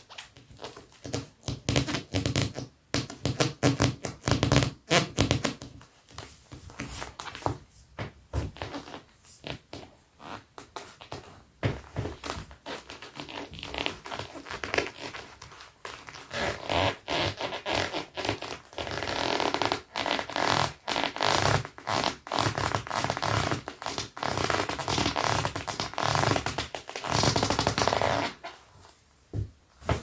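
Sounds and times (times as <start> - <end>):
leather boots squeaking: 0.0 - 30.0.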